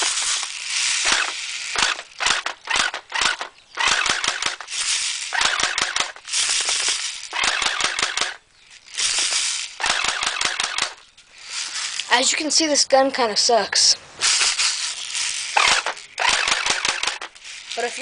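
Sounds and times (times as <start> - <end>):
airsoft gun firing: 1.0 - 4.7, 5.3 - 8.4, 9.2 - 11.0, 15.6 - 17.3.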